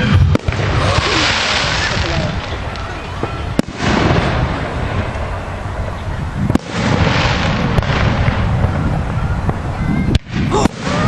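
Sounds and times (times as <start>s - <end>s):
sharp firework bang: 0.0s - 2.6s, 3.2s - 5.2s, 6.4s - 9.3s
fireworks booming and crackling: 0.0s - 11.0s.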